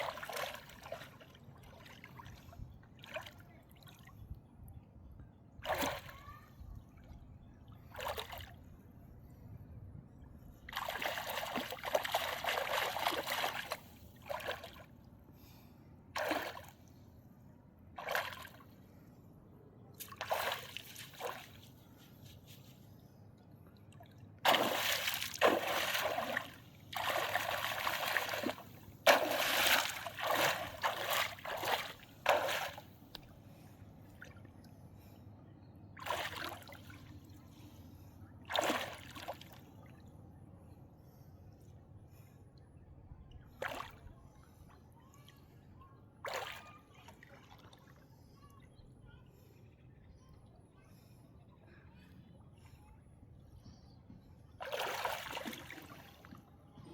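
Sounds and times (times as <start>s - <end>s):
water splashing and sloshing: 0.0s - 4.3s, 5.6s - 9.3s, 10.4s - 17.0s, 18.0s - 19.1s, 20.0s - 34.8s, 36.0s - 37.8s, 38.4s - 40.1s, 43.4s - 45.5s, 46.2s - 48.4s, 53.7s - 56.9s.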